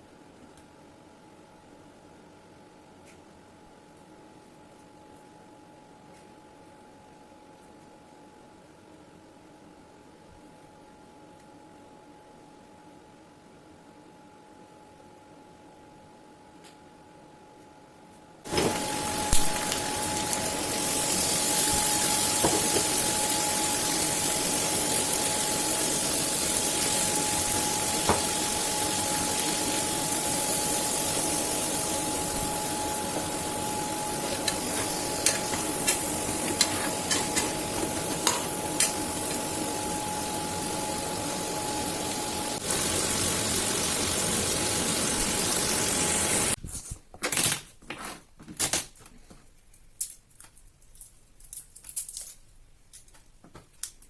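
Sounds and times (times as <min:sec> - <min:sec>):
food sizzling in frying pan: 0:18.5 - 0:46.6.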